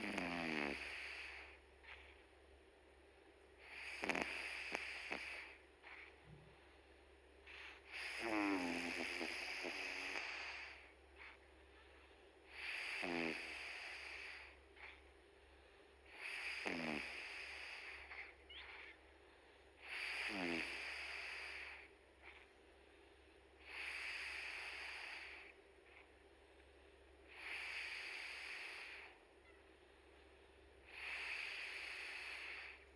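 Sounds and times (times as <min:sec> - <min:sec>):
cat snoring: 0:00.0 - 0:02.1, 0:03.6 - 0:06.1, 0:07.5 - 0:11.4, 0:12.5 - 0:15.0, 0:16.1 - 0:18.9, 0:19.8 - 0:22.4, 0:23.6 - 0:25.5, 0:27.3 - 0:29.2, 0:30.9 - 0:32.9.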